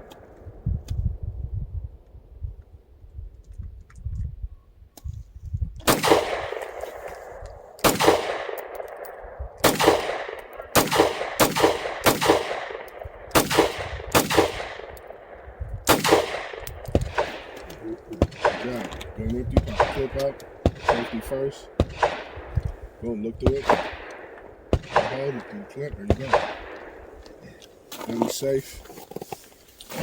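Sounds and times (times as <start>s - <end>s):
pistol shots with echo: 5.8s - 27.4s.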